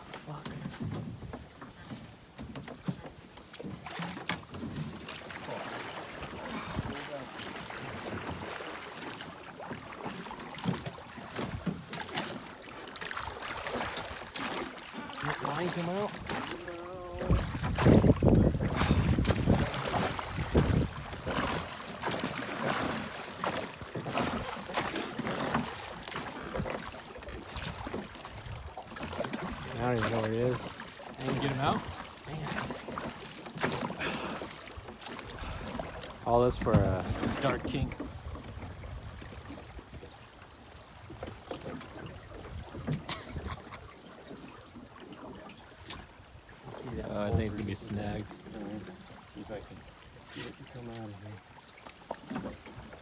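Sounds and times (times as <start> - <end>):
short water splashes: 0.0 - 53.0
river water flowing: 3.9 - 42.8.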